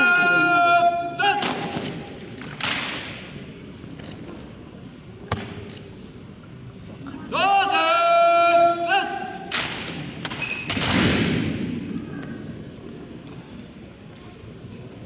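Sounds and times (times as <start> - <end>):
man shouting a command: 0.0 - 2.0, 7.3 - 9.5
loud crashing thuds: 9.5 - 11.9.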